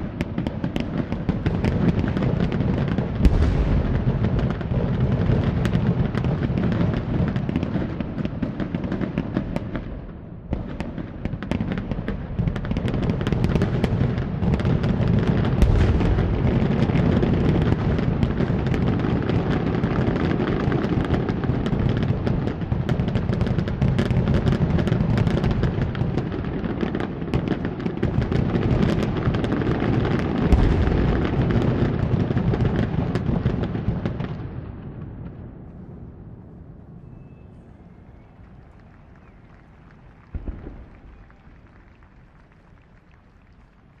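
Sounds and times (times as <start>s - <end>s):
fireworks bangs and crackles: 0.0s - 44.0s.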